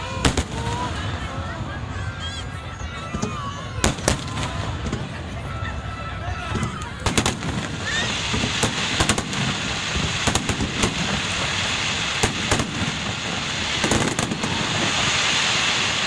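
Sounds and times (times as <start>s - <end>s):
fireworks bangs: 0.0s - 16.0s
fireworks crackling hiss: 0.0s - 16.0s.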